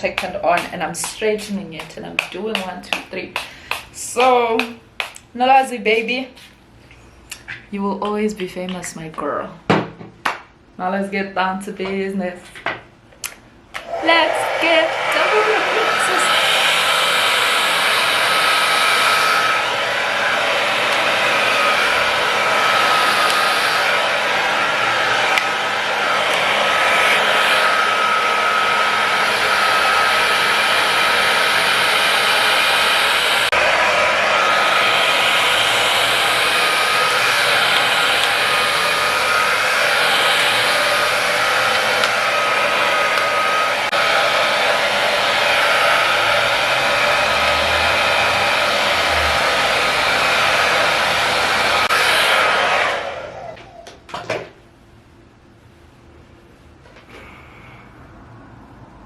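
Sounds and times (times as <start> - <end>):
hair dryer blowing: 0.0 - 5.3, 13.7 - 54.0.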